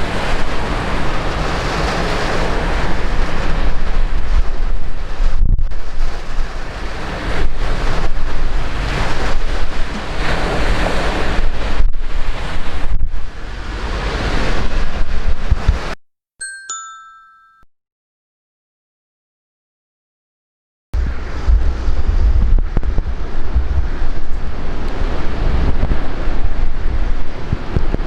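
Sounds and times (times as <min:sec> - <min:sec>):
heavy surf crashing: 0:00.0 - 0:16.0, 0:21.0 - 0:28.0
strong wind buffeting microphone: 0:00.0 - 0:16.0, 0:21.0 - 0:28.0
two-note chime: 0:16.4 - 0:17.7.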